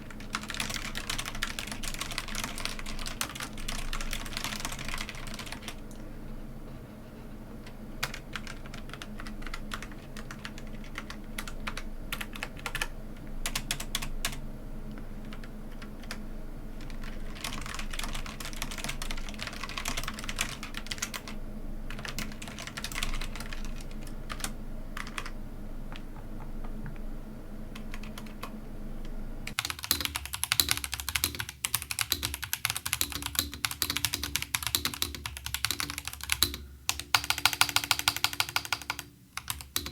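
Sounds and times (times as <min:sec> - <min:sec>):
loud clicky keyboard typing: 0:00.0 - 0:05.9, 0:08.0 - 0:14.4, 0:15.2 - 0:16.2, 0:16.8 - 0:25.4, 0:27.8 - 0:28.5, 0:29.5 - 0:39.9
soft mechanical keyboard typing: 0:00.0 - 0:06.0, 0:07.6 - 0:27.0, 0:27.7 - 0:28.6, 0:29.5 - 0:39.9.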